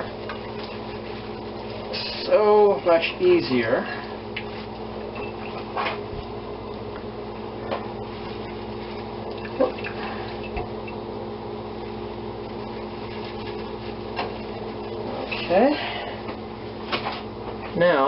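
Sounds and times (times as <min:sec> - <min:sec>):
liquid pouring into a saucepan: 0:08.1 - 0:10.6
small splashes and drips: 0:09.2 - 0:10.1.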